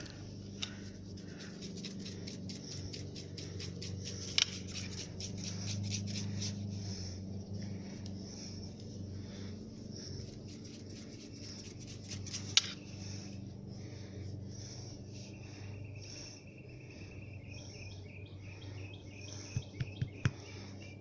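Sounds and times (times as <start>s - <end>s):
scratchy rustling and ticks: 0.0s - 6.8s, 9.9s - 12.8s
steady low hum: 0.0s - 21.0s.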